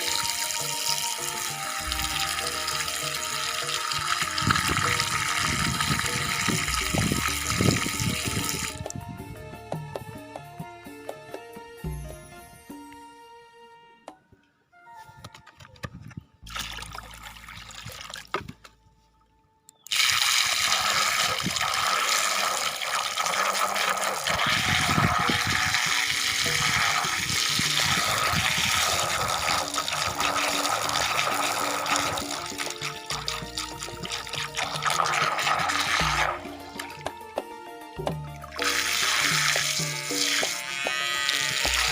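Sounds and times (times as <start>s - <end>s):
water rushing and splashing: 0.0s - 8.8s, 19.9s - 37.1s, 38.1s - 40.6s.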